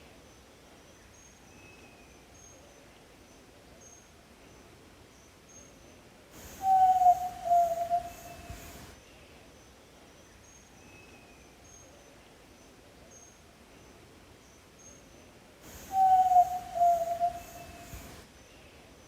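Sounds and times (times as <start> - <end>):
faint insects: 0.0 - 19.0
low whistled bird note: 6.5 - 8.9, 15.7 - 18.2
high bird chirps: 6.6 - 8.8, 15.9 - 18.0.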